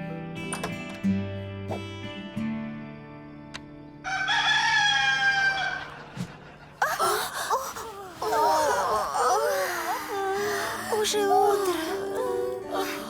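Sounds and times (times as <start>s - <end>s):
acoustic guitar music: 0.0s - 4.0s, 9.2s - 13.0s
rooster crowing: 4.0s - 6.0s.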